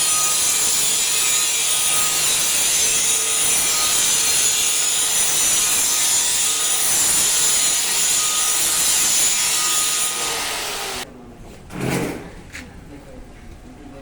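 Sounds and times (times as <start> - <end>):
grinder on steel: 0.0 - 11.1.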